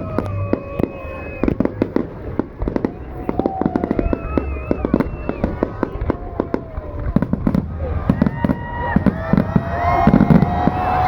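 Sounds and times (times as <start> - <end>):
fireworks popping and crackling: 0.0 - 11.0.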